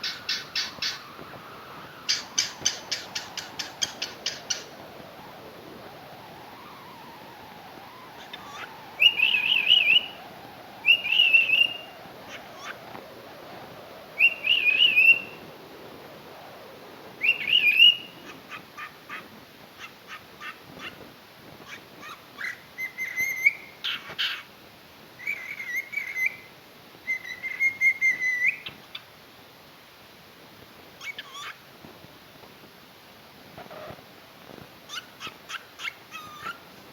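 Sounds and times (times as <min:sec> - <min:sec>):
cockatiel clicking chirps: 0:00.0 - 0:01.1, 0:02.1 - 0:04.7
cockatiel whistling: 0:00.0 - 0:04.7, 0:06.5 - 0:12.8, 0:14.2 - 0:15.4, 0:17.2 - 0:18.9, 0:21.7 - 0:24.4, 0:25.2 - 0:26.5, 0:27.1 - 0:28.8, 0:34.9 - 0:36.6.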